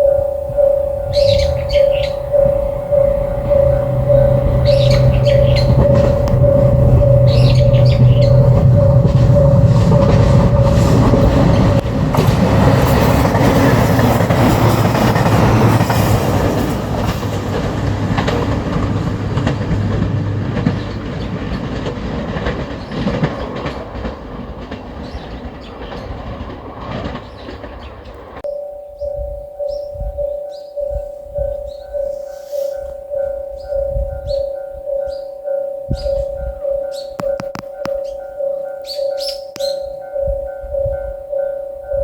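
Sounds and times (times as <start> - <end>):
wheels clacking over rail joints: 0.0 - 28.4
diesel train engines running: 0.0 - 29.7
crossing warning bell: 0.0 - 42.0.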